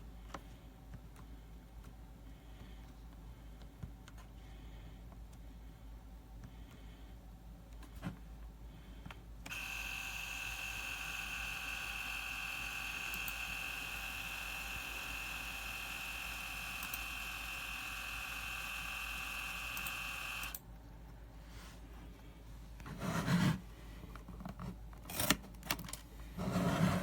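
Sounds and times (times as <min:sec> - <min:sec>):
label maker motor whine: 0:09.5 - 0:20.6.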